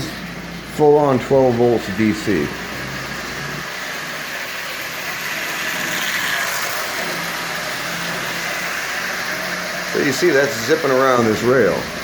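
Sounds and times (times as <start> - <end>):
wheels running on metal track: 0.0 - 12.0
toy train motor whirring: 1.5 - 12.0.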